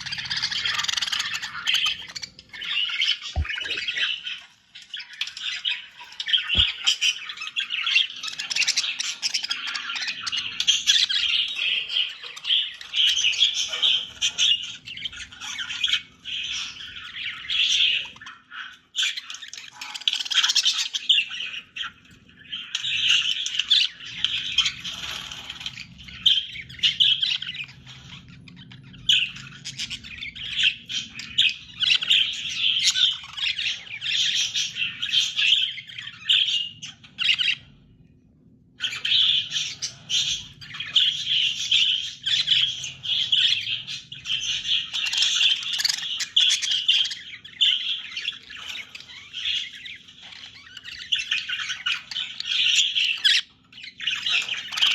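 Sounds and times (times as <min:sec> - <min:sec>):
budgerigar warbling and chattering: 0:00.0 - 0:22.0.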